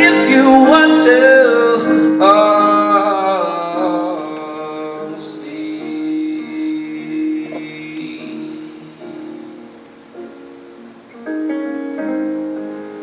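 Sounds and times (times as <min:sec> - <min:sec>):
man singing ballad note: 0:00.0 - 0:09.7
sustained keyboard chord: 0:00.0 - 0:13.0.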